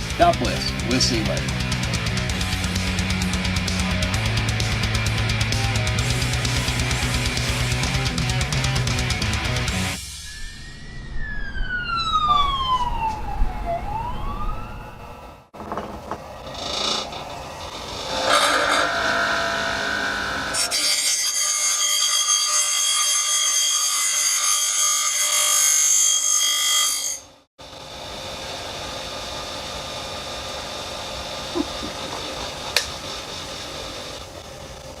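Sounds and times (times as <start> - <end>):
power tool grinding: 16.3 - 22.4.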